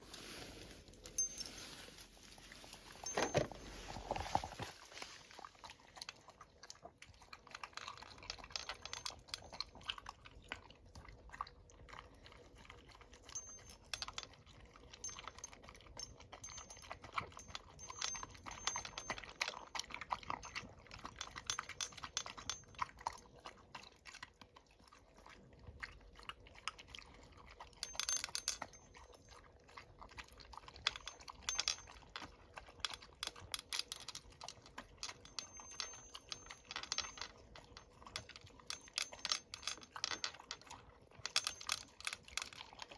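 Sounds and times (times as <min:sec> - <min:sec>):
dog chewing food: 0:05.3 - 0:13.6, 0:22.0 - 0:27.8, 0:28.7 - 0:33.5, 0:37.4 - 0:38.7, 0:40.3 - 0:41.2.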